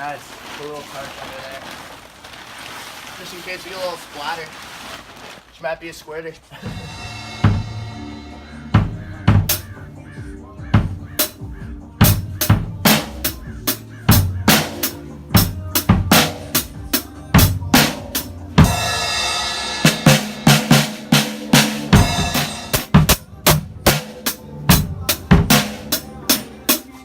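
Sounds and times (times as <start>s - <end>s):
drum kit beat: 6.6s - 27.0s
bass line: 6.7s - 26.7s.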